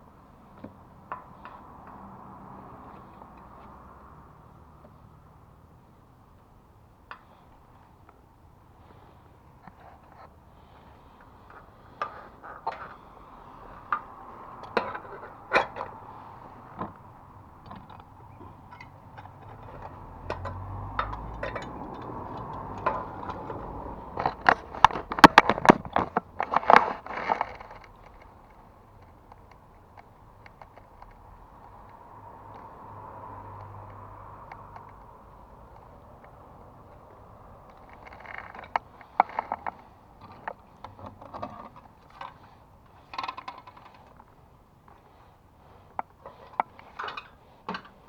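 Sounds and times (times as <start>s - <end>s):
knocks clinks and scrapes: 9.6s - 17.0s, 17.6s - 28.4s, 37.7s - 48.0s.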